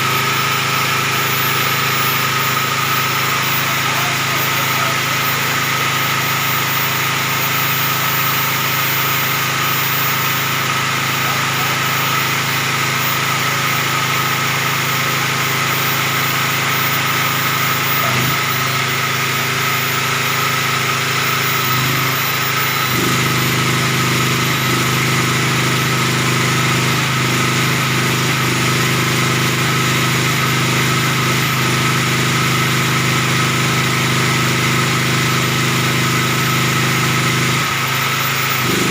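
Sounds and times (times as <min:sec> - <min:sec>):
generator engine running: 0:00.0 - 0:38.9.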